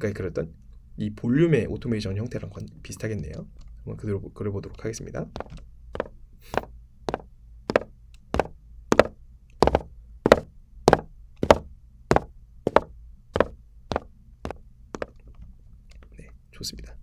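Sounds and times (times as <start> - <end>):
footsteps walking past: 5.4 - 15.1.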